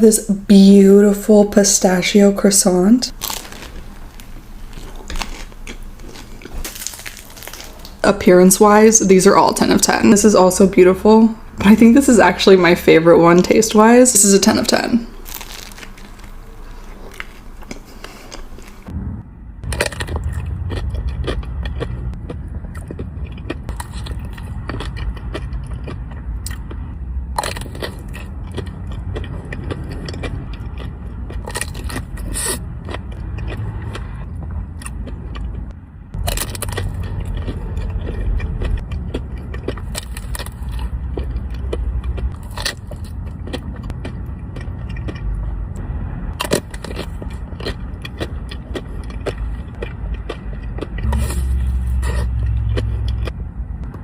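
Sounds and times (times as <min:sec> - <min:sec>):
steady low rumble: 0:00.0 - 0:54.0
crunching and chewing dessert: 0:03.1 - 0:08.1, 0:15.1 - 0:18.9, 0:19.6 - 0:54.0.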